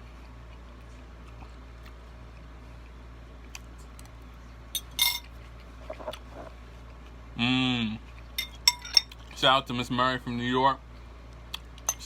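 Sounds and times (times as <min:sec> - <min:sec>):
steady low hum: 0:00.0 - 0:12.0
utensil clinking against bowl: 0:04.8 - 0:05.3, 0:08.4 - 0:09.2.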